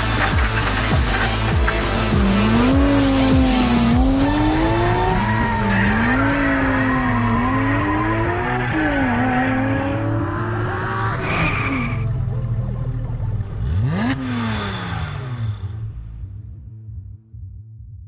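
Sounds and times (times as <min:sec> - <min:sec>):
tire squeal: 0:00.0 - 0:12.2
car engine revving: 0:00.0 - 0:17.1.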